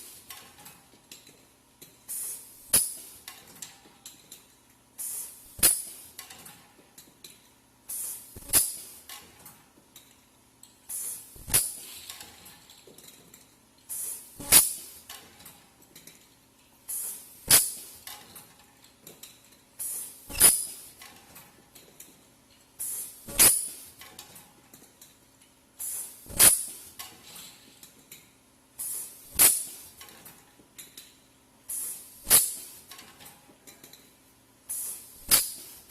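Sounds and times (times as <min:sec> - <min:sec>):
welding machine hissing burst: 0:02.1 - 0:03.2, 0:05.0 - 0:06.1, 0:07.9 - 0:09.0, 0:10.9 - 0:12.2, 0:13.9 - 0:15.0, 0:16.9 - 0:18.0, 0:19.8 - 0:20.9, 0:22.8 - 0:23.9, 0:25.8 - 0:27.6, 0:28.8 - 0:30.0, 0:31.7 - 0:32.8, 0:34.7 - 0:35.9.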